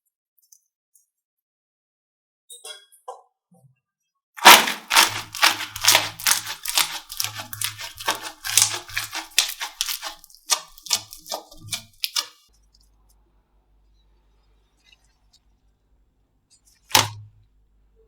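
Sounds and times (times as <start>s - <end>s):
slime clicking and popping: 4.4s - 12.4s.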